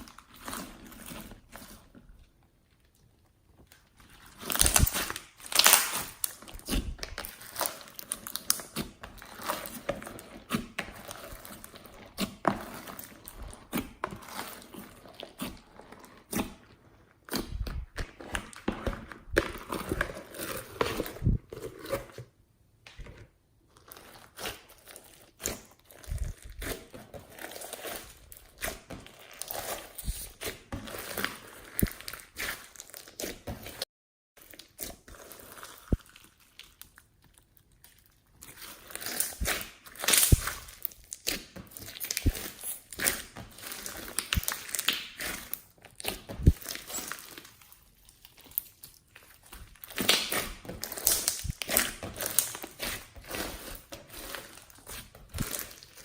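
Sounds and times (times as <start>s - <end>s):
slime crackling and popping: 2.9s - 16.6s, 34.4s - 56.0s.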